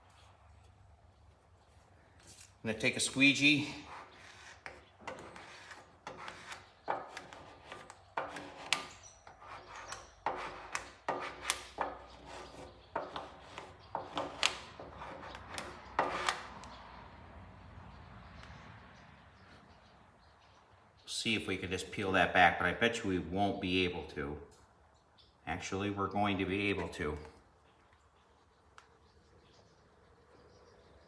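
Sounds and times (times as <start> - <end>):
squeegee scraping wet sticker: 2.2 - 16.8.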